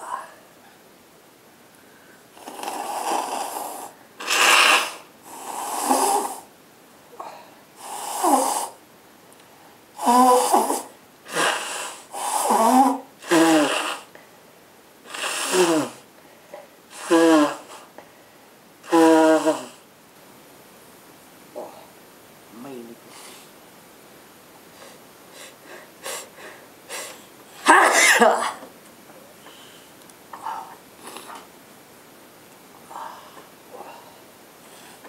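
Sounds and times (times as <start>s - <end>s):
nose blowing into a handkerchief: 2.4s - 6.5s, 7.8s - 8.8s, 10.0s - 14.1s, 15.1s - 16.0s, 16.9s - 17.9s, 18.9s - 19.8s
person sneezing: 27.0s - 28.6s.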